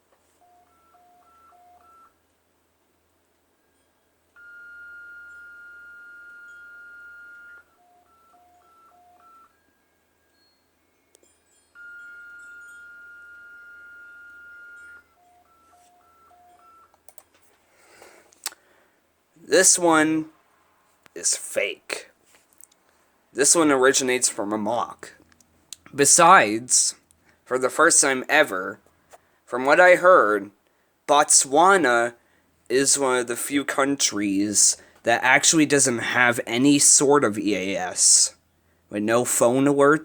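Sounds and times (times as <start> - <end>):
long steady alert tone: 0.4 - 2.2, 3.6 - 17.0
short beeps: 3.6 - 17.0.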